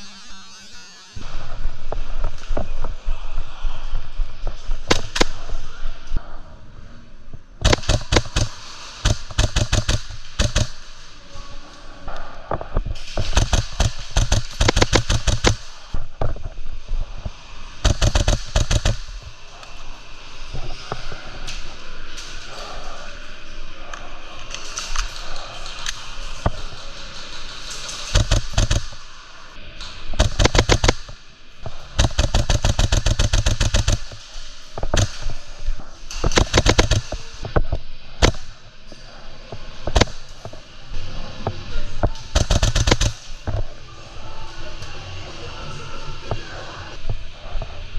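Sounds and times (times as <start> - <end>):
airsoft guns firing: 4.9 - 5.6, 7.6 - 11.1, 13.1 - 16.0, 17.8 - 19.3, 27.7 - 29.1, 30.1 - 35.5, 36.1 - 37.4, 38.2 - 38.5, 39.9 - 40.3, 42.2 - 43.4.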